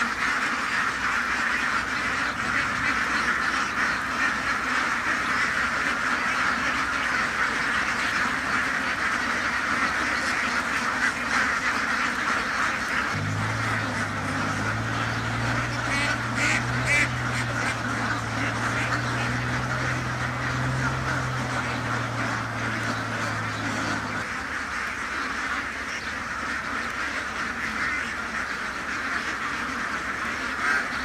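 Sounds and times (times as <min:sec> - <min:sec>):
ducks quacking: 0:00.0 - 0:31.0
steady low hum: 0:13.1 - 0:24.2.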